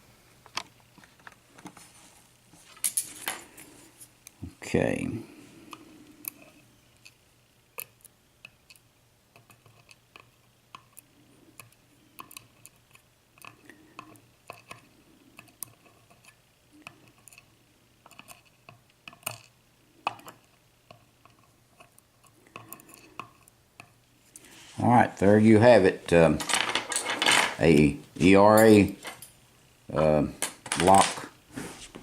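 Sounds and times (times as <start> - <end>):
small metal parts clinking: 26.4 - 27.6.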